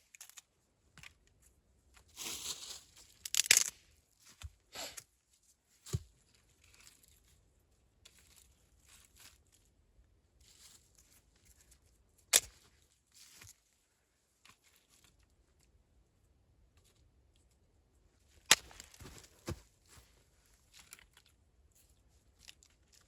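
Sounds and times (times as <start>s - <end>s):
rustling handling noise: 2.0s - 4.5s, 18.5s - 21.2s.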